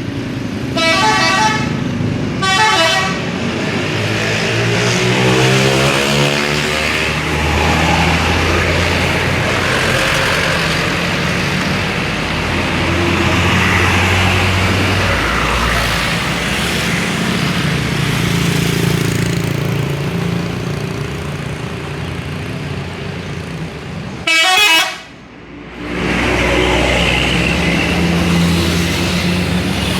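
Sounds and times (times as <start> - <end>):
street noise: 0.0 - 29.9
bus engine running: 5.5 - 29.9.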